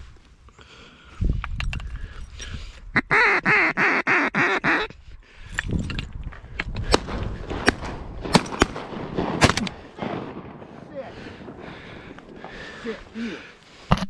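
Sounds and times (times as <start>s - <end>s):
mallard quacking: 3.0s - 4.9s.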